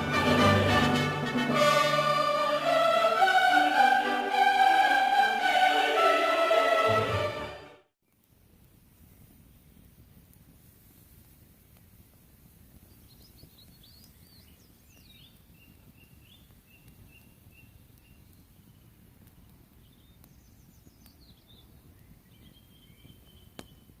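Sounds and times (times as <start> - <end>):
birds singing faintly: 12.6 - 24.0.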